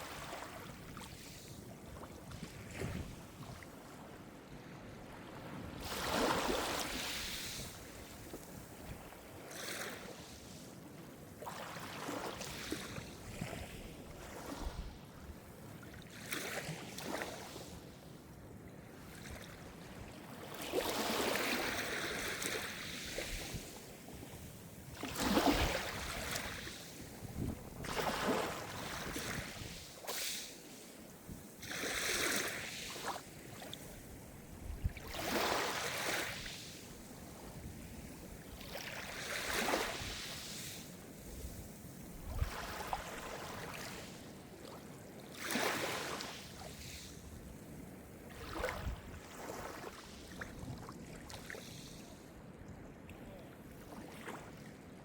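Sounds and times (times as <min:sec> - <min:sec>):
waves washing on shore: 0:05.0 - 0:10.7, 0:20.1 - 0:44.3.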